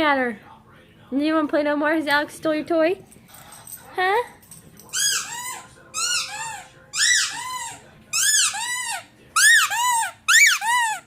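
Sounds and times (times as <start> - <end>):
squeaky dog toy squeaks: 4.9 - 11.0.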